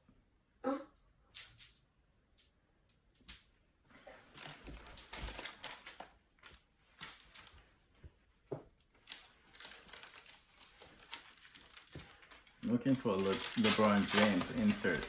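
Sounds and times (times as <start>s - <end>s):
wrapper and cards crinkling: 4.1s - 8.0s, 8.9s - 15.0s.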